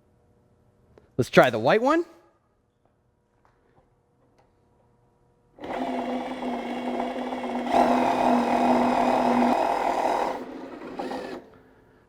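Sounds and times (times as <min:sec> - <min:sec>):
electric drill motor whirring: 0:05.6 - 0:11.6.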